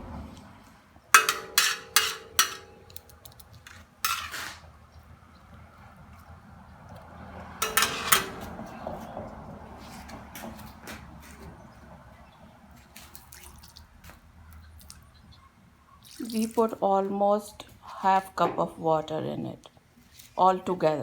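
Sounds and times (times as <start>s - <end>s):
metal cookware clanking: 1.2s - 4.7s, 7.6s - 8.9s
short scrape: 4.1s - 4.7s.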